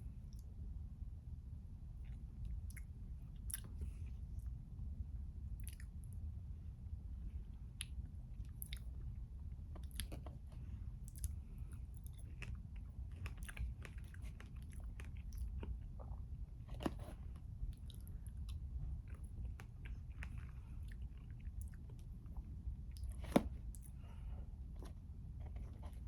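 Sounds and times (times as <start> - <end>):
steady low hum: 0.0 - 26.0
close-up chewing: 5.6 - 6.0, 9.7 - 26.0.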